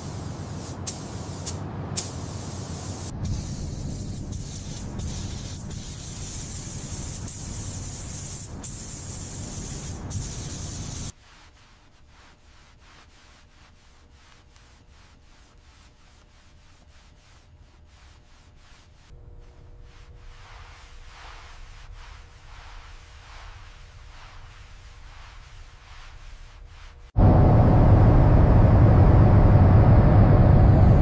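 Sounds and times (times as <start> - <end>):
loud spray hiss: 0.0 - 11.2
faint rubbing strokes: 3.7 - 27.2.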